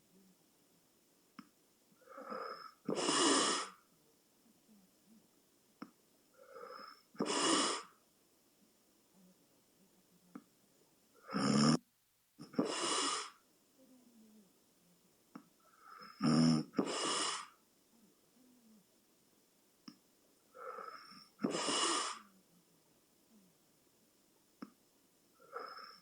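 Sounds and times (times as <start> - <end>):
person snoring: 11.2 - 11.8, 15.9 - 17.6.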